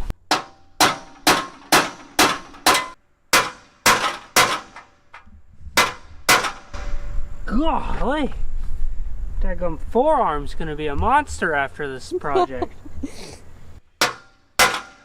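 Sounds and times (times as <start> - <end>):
hammer striking steel punch: 0.3 - 5.2, 5.8 - 7.3, 14.0 - 15.0.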